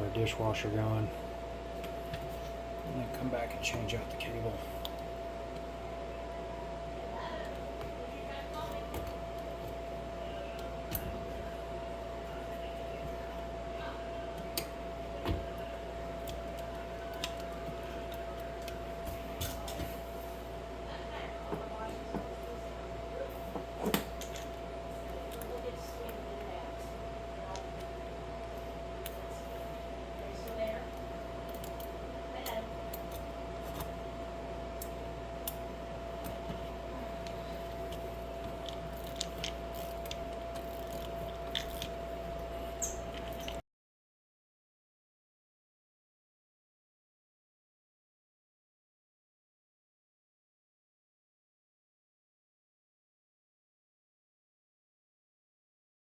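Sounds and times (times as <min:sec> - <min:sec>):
steady low hum: 0:00.0 - 0:43.6
clicks and crunching of wire handling: 0:14.3 - 0:20.1, 0:27.4 - 0:43.6.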